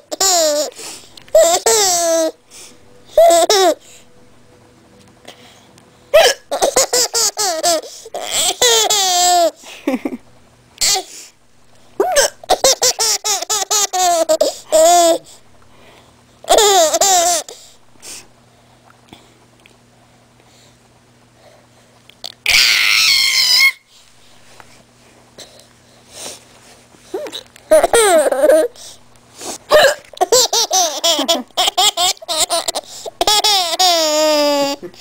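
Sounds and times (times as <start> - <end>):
baby giggling: 0.0 - 2.4, 3.1 - 3.8, 6.2 - 10.2, 12.0 - 15.3, 16.5 - 17.6, 27.1 - 28.8, 29.7 - 35.0
woman hiccuping: 29.7 - 30.2.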